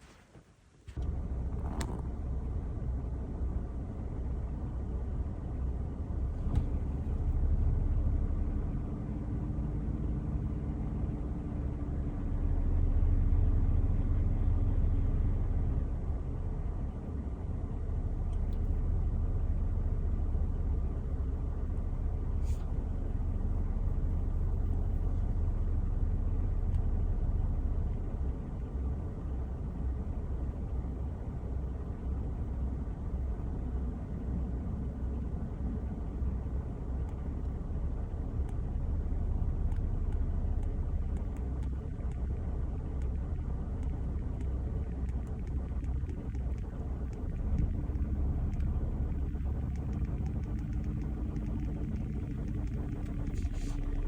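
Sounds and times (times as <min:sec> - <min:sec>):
vehicle engine rumbling: 0:00.0 - 0:54.0
faint clicks: 0:39.7 - 0:54.0.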